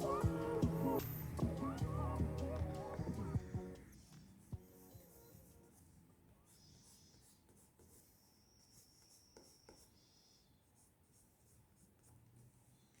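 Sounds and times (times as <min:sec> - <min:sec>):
faint scratching strokes: 0:00.0 - 0:13.0.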